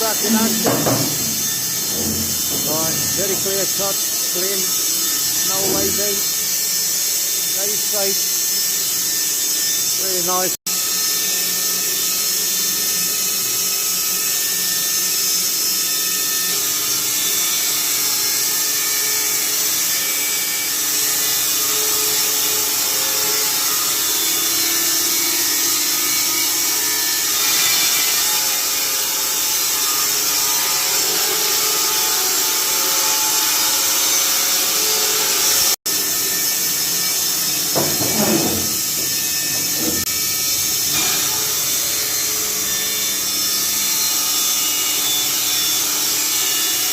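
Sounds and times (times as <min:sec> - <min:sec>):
band saw cutting log: 0:00.0 - 0:10.7, 0:22.1 - 0:46.9.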